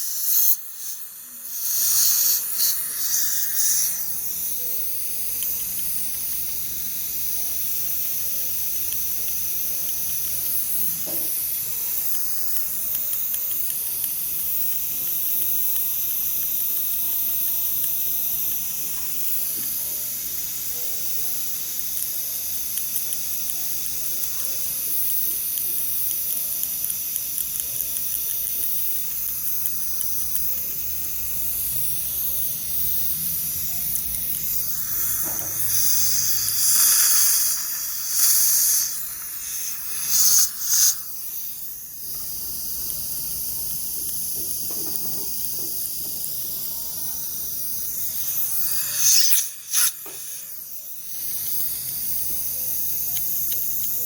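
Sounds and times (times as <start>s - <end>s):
dental scaler spray hiss: 0.0s - 54.0s
dental suction hiss: 0.0s - 54.0s.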